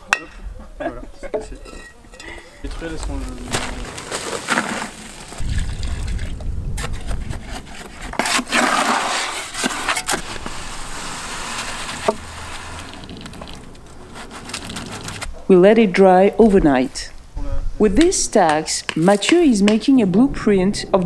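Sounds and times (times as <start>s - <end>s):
wet concrete sloshing and scraping: 3.4s - 15.3s.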